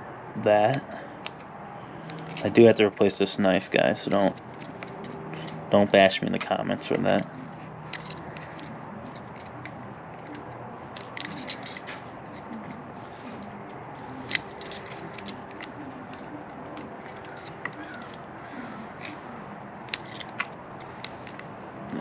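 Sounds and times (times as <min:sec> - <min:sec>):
steady background hum: 0:00.0 - 0:22.0
handling rustle: 0:00.6 - 0:22.0.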